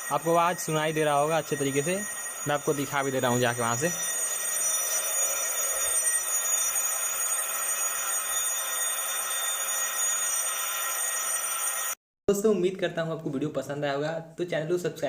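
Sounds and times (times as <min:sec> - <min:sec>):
doorbell ringing: 0:00.0 - 0:11.9.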